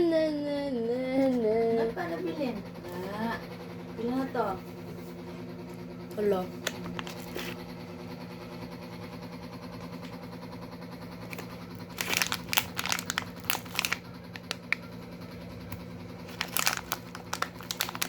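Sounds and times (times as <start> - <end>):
steady low hum: 0.0 - 18.0
plastic packet crinkling: 6.5 - 7.7, 11.2 - 15.1, 15.7 - 18.0.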